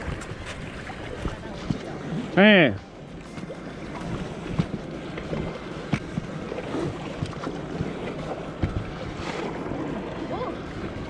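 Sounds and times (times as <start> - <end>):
wind on microphone: 0.0 - 2.0
water sloshing: 0.0 - 11.0.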